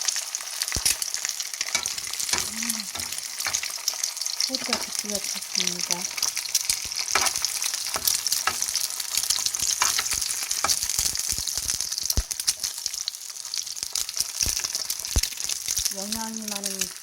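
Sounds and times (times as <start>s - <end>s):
egg sizzling in oil: 0.0s - 17.0s
oil popping and crackling: 0.0s - 17.0s.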